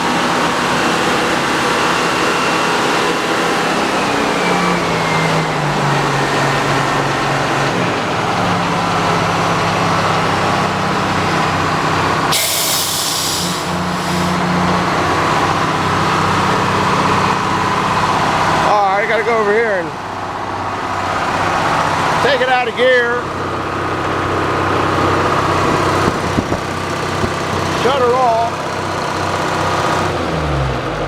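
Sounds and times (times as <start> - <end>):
sawmill engine running: 0.0 - 31.0
saw turning: 12.3 - 14.4
short hiss: 12.3 - 14.4.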